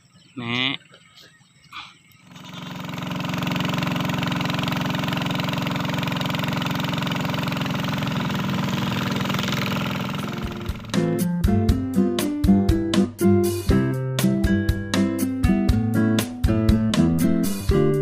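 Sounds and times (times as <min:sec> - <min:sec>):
engine idling: 0:02.0 - 0:11.2
acoustic guitar music: 0:10.4 - 0:18.0.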